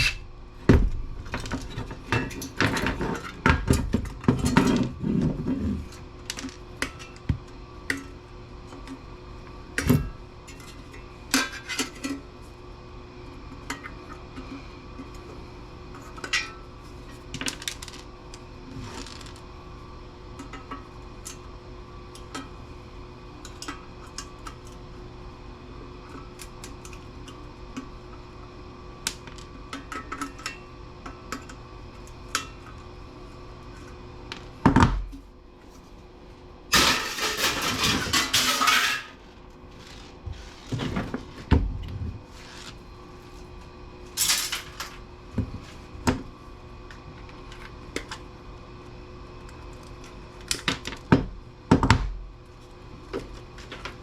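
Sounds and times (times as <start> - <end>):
metal parts clattering: 36.7 - 39.2.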